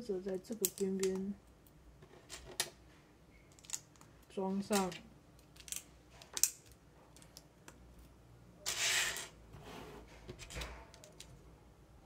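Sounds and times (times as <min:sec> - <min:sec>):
plastic toy bricks clicking: 0:00.4 - 0:01.3.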